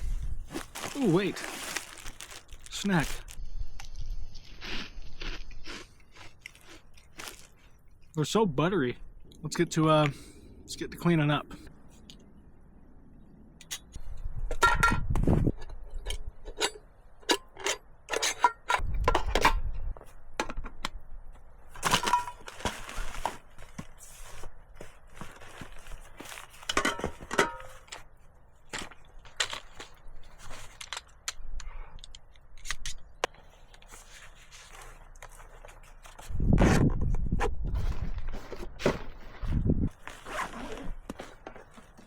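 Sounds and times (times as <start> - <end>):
gear clicks and crinkles: 0.0 - 8.3, 20.0 - 42.0.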